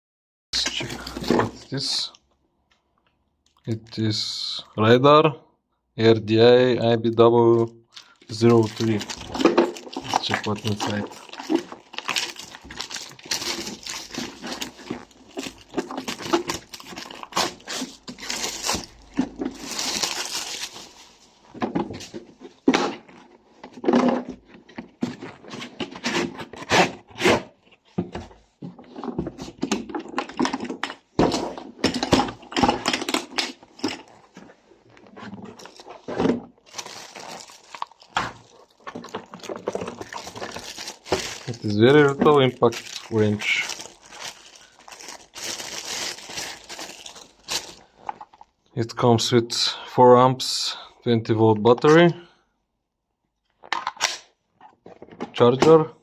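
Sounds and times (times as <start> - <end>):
packaging crinkling and tearing: 8.0 - 21.4, 35.0 - 48.5.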